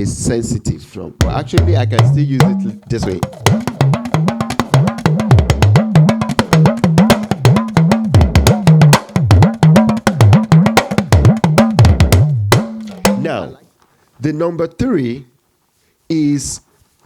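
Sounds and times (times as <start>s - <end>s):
talking drum strokes: 1.2s - 13.6s.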